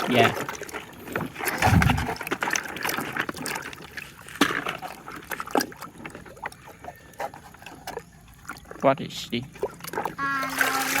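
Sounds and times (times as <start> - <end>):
water trickling and sloshing: 0.0 - 11.0
low bump: 1.6 - 2.2.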